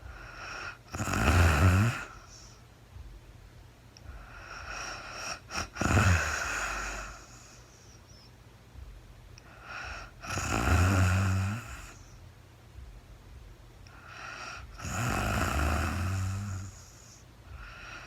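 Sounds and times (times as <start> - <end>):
woman snoring: 0.0 - 2.6, 4.1 - 7.8, 9.6 - 12.1, 13.9 - 18.0.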